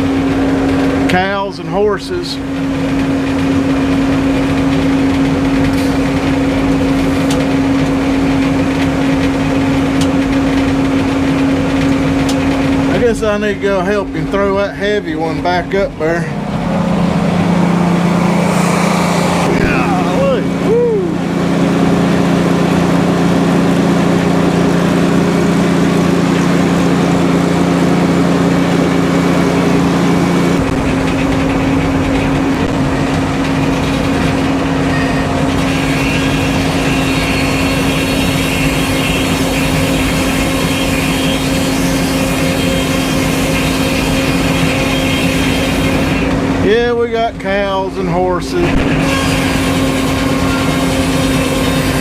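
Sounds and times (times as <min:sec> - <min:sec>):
sawmill engine running: 0:00.0 - 0:52.0
high-pitched whine: 0:13.0 - 0:27.2, 0:32.5 - 0:46.4, 0:48.2 - 0:52.0.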